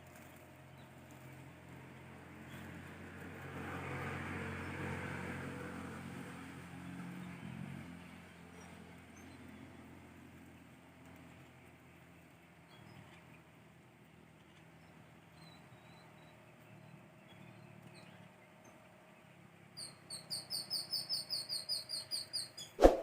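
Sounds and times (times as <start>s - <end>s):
road vehicle passing by: 0.2s - 12.0s.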